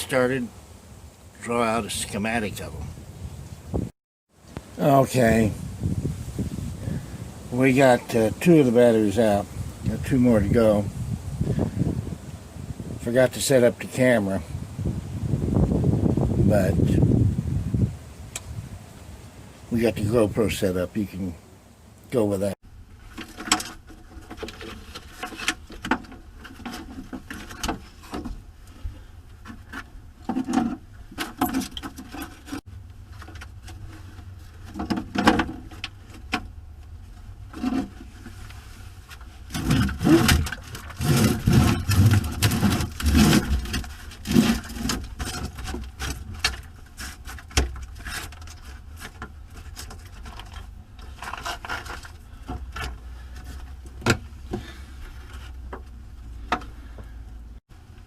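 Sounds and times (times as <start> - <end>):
scraping and rubbing on batteries: 37.5 - 53.8.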